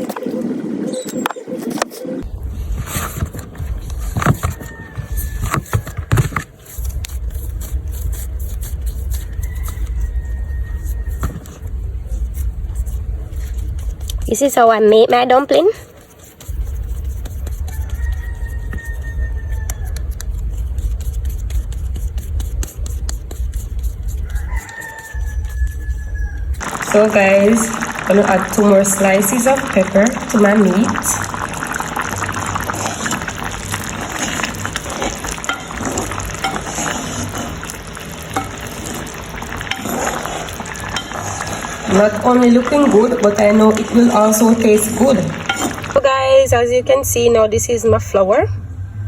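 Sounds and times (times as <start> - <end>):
knocks and scrapes: 1.6 - 14.4, 15.8 - 46.0
hands kneading dough: 1.9 - 46.4
steady low rumble: 2.2 - 4.2, 6.8 - 14.4.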